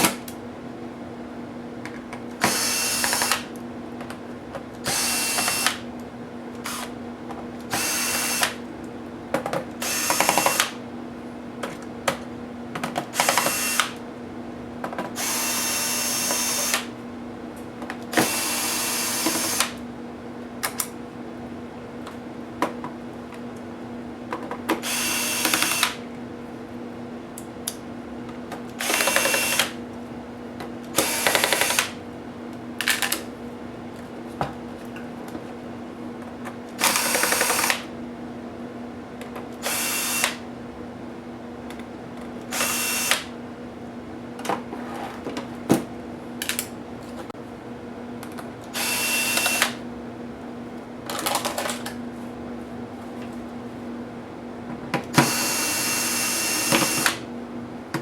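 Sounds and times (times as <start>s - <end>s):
electric screwdriver whirring: 2.4s - 3.5s, 4.8s - 5.8s, 6.6s - 6.9s, 7.7s - 8.6s, 9.8s - 10.8s, 13.1s - 14.0s, 15.2s - 16.9s, 18.2s - 19.8s, 24.8s - 26.0s, 28.8s - 29.8s, 31.0s - 32.0s, 36.8s - 37.9s, 39.6s - 40.4s, 42.5s - 43.3s, 48.7s - 49.8s, 55.2s - 57.2s.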